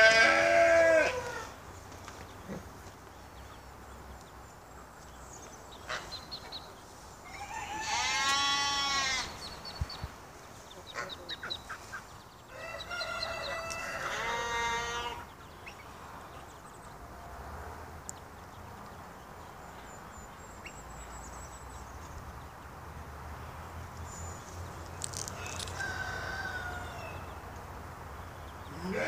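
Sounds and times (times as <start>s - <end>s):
rooster crowing: 0.0s - 1.5s, 7.3s - 9.2s, 12.5s - 15.3s, 25.3s - 27.4s.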